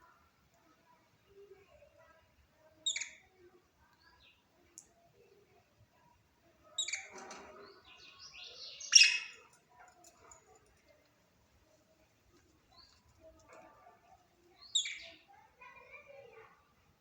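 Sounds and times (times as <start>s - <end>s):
budgerigar chirping and warbling: 2.8s - 3.2s, 6.8s - 7.1s, 8.4s - 9.5s, 14.7s - 15.2s.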